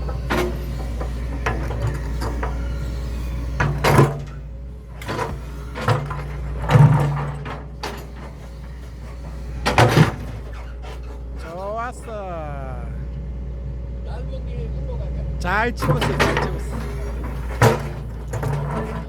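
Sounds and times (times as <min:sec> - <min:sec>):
diesel engine running: 0:00.0 - 0:19.0
bucket clunking against rocks: 0:05.0 - 0:11.2, 0:15.8 - 0:19.0.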